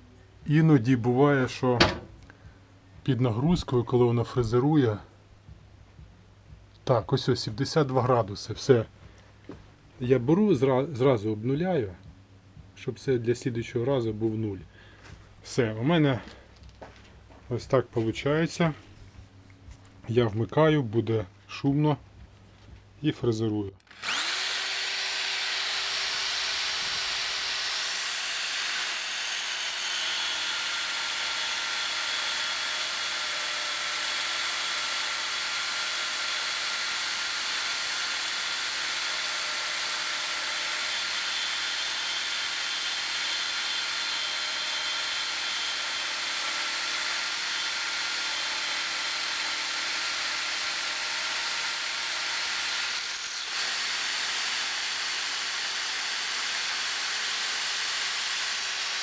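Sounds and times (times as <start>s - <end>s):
electric drill milling steel: 23.8s - 59.0s.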